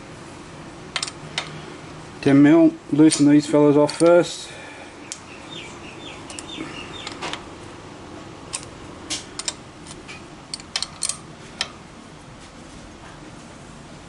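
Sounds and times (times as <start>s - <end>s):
socket spanner clicking on bolts: 1.0s - 1.5s, 3.1s - 4.2s, 6.3s - 7.4s, 8.5s - 11.7s.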